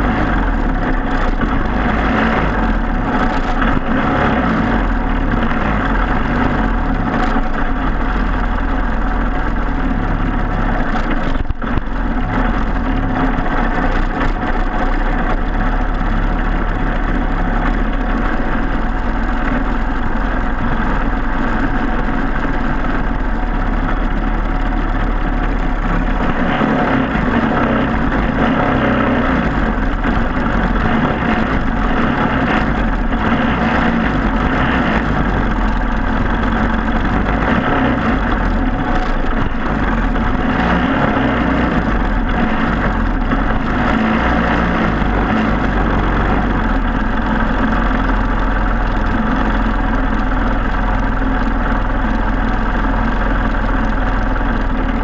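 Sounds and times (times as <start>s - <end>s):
kart engine running: 0.0s - 55.0s.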